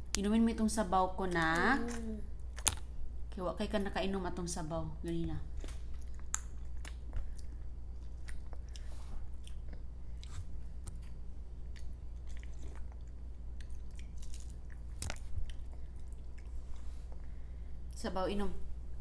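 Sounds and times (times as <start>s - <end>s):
steady low hum: 0.0s - 19.0s
wet chewing and mouth clicks: 5.1s - 17.3s.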